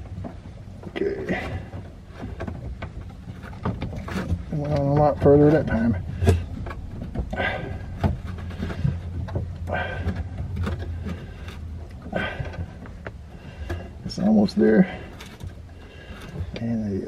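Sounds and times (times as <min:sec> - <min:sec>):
knocks and scrapes on pipe: 0:00.0 - 0:16.8
low hum: 0:00.0 - 0:17.0
heavy breathing: 0:01.0 - 0:02.5, 0:05.9 - 0:16.6.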